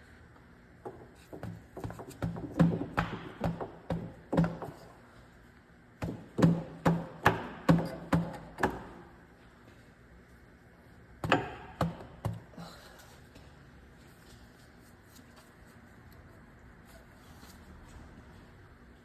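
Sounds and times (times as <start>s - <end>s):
rubber hammer striking metal cover: 6.0s - 9.0s.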